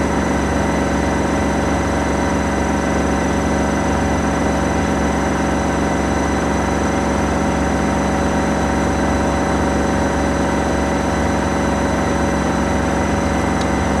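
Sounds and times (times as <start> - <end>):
washing machine motor hum: 11.2 - 14.0.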